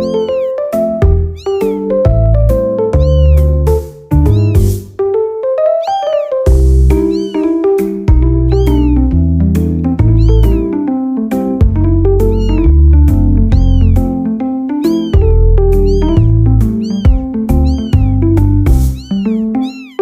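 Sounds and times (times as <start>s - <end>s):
cat meowing: 0.0s - 2.1s, 3.0s - 3.6s, 4.2s - 4.8s, 5.6s - 9.1s, 10.0s - 10.7s, 12.2s - 14.1s, 14.8s - 20.0s
background music with bass line: 2.1s - 5.0s, 6.5s - 10.8s, 15.2s - 19.1s.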